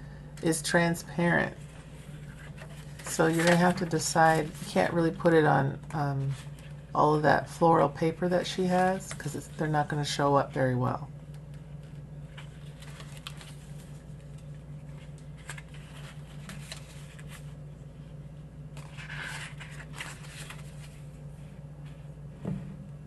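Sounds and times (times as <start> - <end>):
steady low hum: 0.0 - 23.0
pages turning and rustling: 1.6 - 5.0, 11.4 - 17.6, 18.7 - 22.1.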